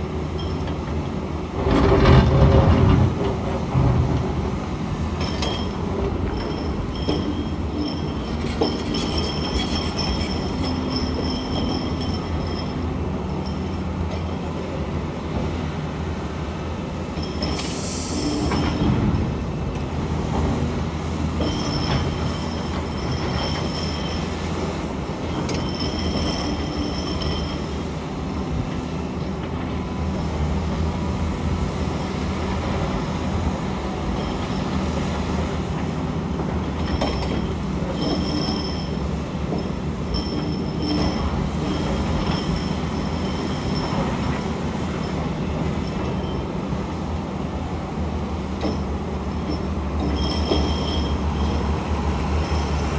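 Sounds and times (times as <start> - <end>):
excavator diesel engine under load: 0.0 - 52.9
high-pitched metallic squeals: 5.2 - 13.7, 17.2 - 19.0, 21.4 - 27.9, 36.9 - 46.6, 49.4 - 52.9.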